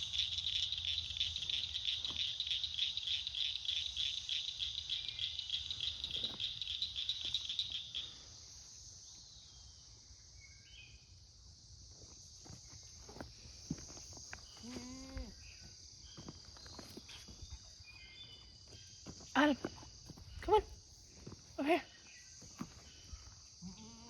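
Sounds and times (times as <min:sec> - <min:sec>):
insects trilling: 0:00.0 - 0:24.0.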